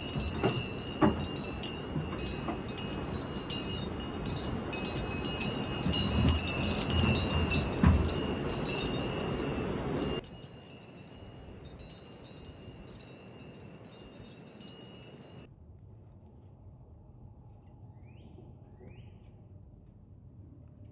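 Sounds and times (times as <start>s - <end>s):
metal wind chimes ringing: 0.0s - 15.5s.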